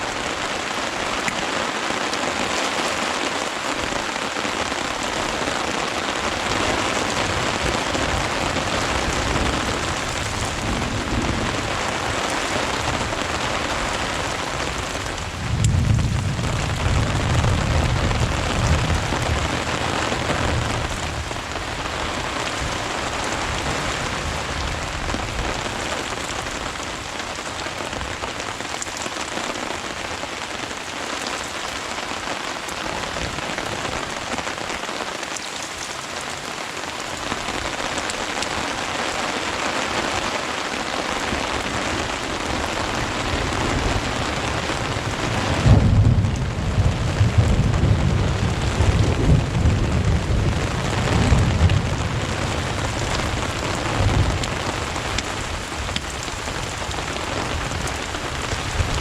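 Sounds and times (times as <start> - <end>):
steady rain: 0.0 - 59.0
thunder rumble: 6.3 - 27.1, 42.4 - 59.0.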